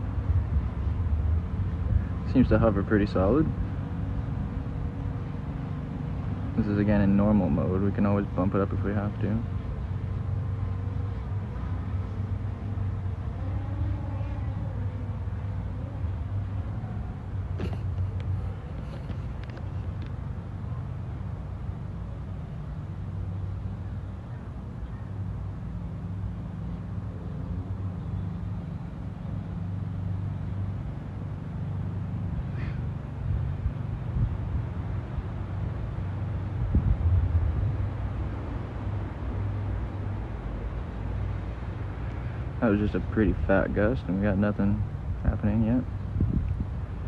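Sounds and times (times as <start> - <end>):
wind buffeting microphone: 0.0 - 8.8, 33.1 - 40.6, 44.8 - 47.0.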